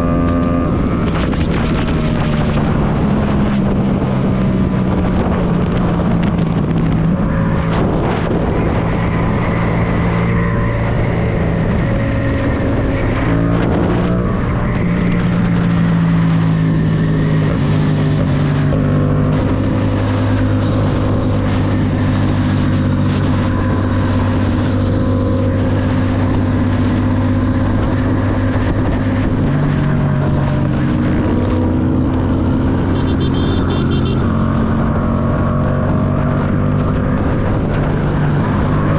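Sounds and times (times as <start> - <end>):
motorcycle engine running: 10.8 - 38.9.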